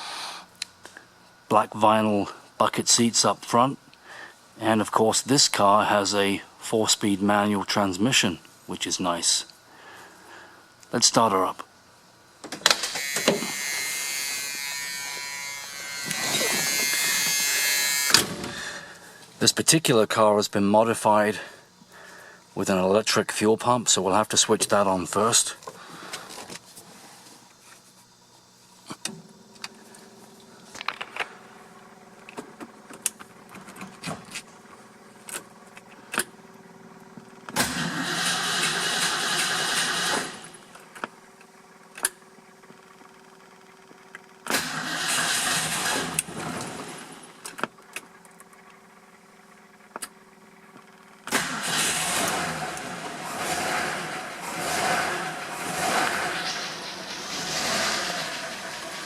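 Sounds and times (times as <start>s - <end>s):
electric fuel pump humming: 12.4s - 19.4s
engine cranking and running: 16.0s - 18.8s, 37.3s - 41.0s, 44.4s - 49.0s, 49.6s - 59.0s.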